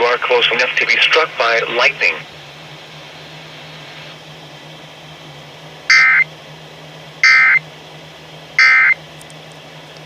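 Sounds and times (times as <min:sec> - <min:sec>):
radio hiss: 0:00.0 - 0:02.2
low hum: 0:01.9 - 0:09.1
warbling two-tone data bursts: 0:05.9 - 0:06.2, 0:07.2 - 0:07.6, 0:08.6 - 0:09.0.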